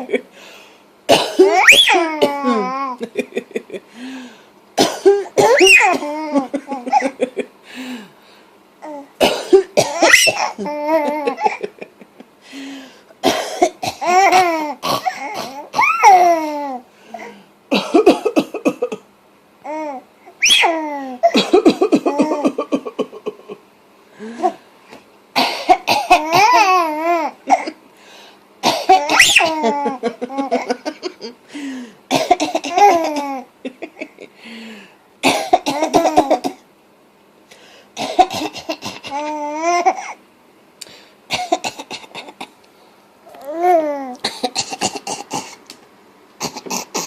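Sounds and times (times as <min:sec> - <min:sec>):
adult coughing: 0:01.1 - 0:02.8, 0:04.8 - 0:07.4, 0:09.2 - 0:10.6, 0:13.2 - 0:15.9, 0:17.7 - 0:19.1, 0:21.2 - 0:23.2, 0:25.4 - 0:26.6, 0:28.6 - 0:29.8, 0:32.1 - 0:33.4, 0:35.2 - 0:36.6, 0:38.0 - 0:39.2, 0:41.3 - 0:42.6, 0:44.2 - 0:45.6, 0:46.4 - 0:47.0
baby laughing and squealing: 0:01.4 - 0:03.0, 0:05.4 - 0:07.0, 0:09.9 - 0:11.5, 0:15.8 - 0:16.7, 0:20.4 - 0:21.0, 0:28.9 - 0:30.6.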